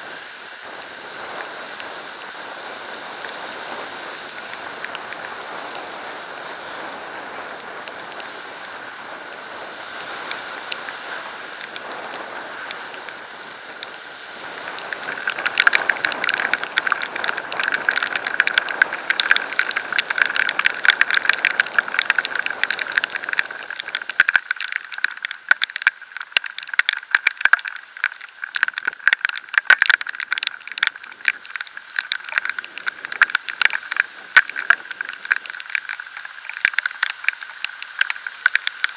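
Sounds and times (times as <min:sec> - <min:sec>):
road and wind noise: 0:00.0 - 0:38.9
water drops hitting camera: 0:14.6 - 0:38.9.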